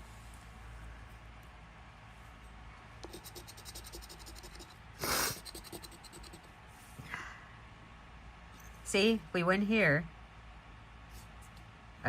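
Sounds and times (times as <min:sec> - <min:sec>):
scratch-off ticket scraping: 0:03.0 - 0:06.5.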